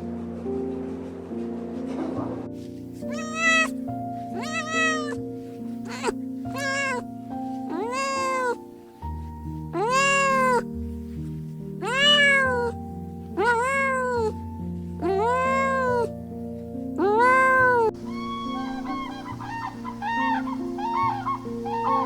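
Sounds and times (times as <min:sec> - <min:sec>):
background music: 0:00.0 - 0:22.0
cat meowing: 0:03.0 - 0:05.2, 0:05.8 - 0:07.1, 0:07.7 - 0:08.7, 0:09.8 - 0:10.7, 0:11.8 - 0:12.8, 0:13.4 - 0:14.4, 0:15.0 - 0:16.1, 0:17.0 - 0:19.2.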